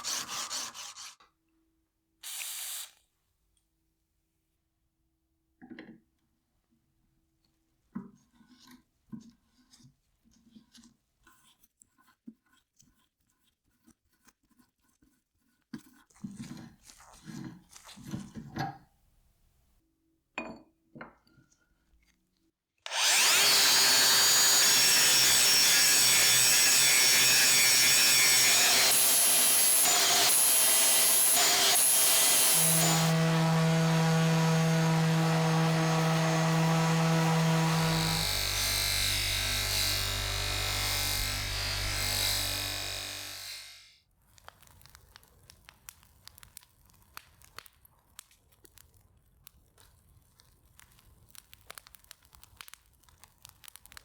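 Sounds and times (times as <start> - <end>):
power tool whirring on wood: 2.2 - 3.0, 22.9 - 43.9.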